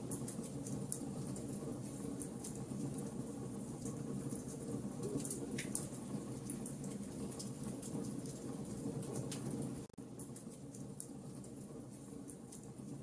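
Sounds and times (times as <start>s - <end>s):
fire crackling and popping: 0.0s - 13.0s.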